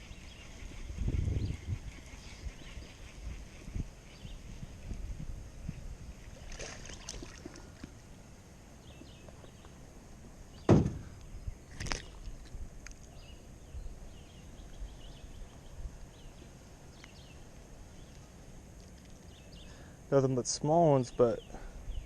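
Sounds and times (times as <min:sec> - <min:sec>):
splash: 0:06.3 - 0:07.8, 0:11.7 - 0:12.3
knocks in a boat: 0:10.6 - 0:11.1
loud thump: 0:10.6 - 0:11.2.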